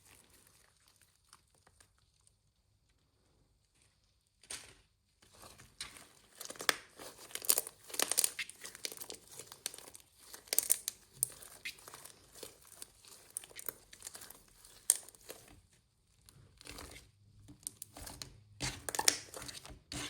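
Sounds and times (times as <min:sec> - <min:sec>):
sticky slime crackles and snaps: 0:05.8 - 0:15.6, 0:16.6 - 0:20.0.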